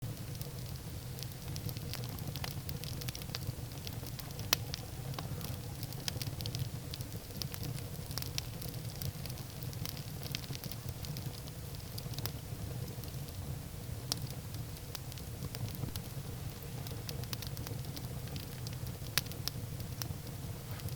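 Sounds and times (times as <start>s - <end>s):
firewood crackling and popping: 0.0s - 20.9s
low steady rumble: 10.9s - 20.9s.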